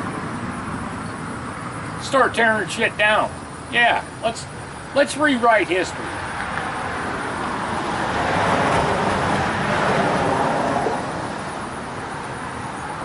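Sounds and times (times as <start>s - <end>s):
vehicle driving past: 5.9s - 13.0s.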